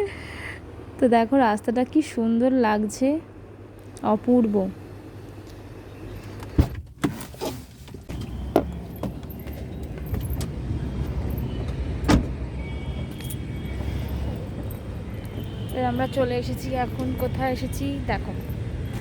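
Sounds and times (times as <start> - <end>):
vehicle road and engine rumble: 0.0 - 19.0.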